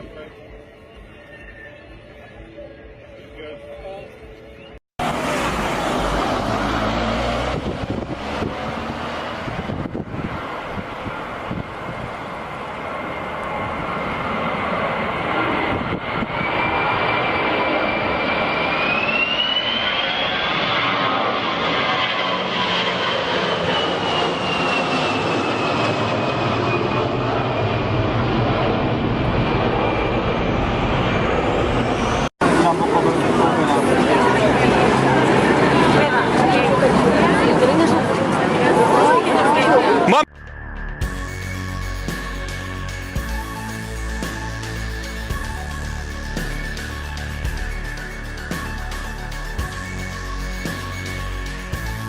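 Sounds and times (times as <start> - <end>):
aircraft engine running: 0.0 - 52.0
high engine whine: 0.0 - 52.0
loud engine running: 5.0 - 12.8, 40.3 - 52.0
deep rumble: 5.0 - 12.9
wind rush on microphone: 6.7 - 12.4, 15.3 - 16.8.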